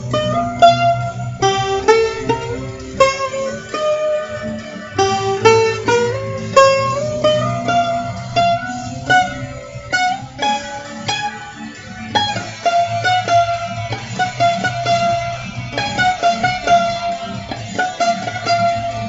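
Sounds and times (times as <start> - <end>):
guitar picking single notes: 0.0 - 19.0
steady low backing: 0.0 - 19.0.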